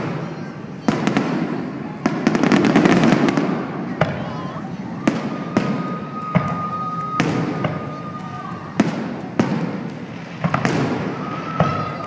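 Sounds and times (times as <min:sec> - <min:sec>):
fireworks bangs: 0:00.0 - 0:12.0
high whistle: 0:05.0 - 0:08.8, 0:10.9 - 0:12.0.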